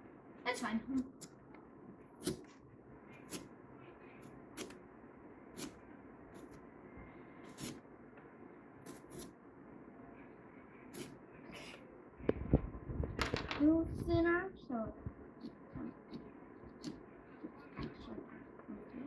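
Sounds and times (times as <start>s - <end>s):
carving tool scraping pumpkin: 7.4s - 7.8s, 8.8s - 9.4s, 10.9s - 11.2s, 15.4s - 18.2s.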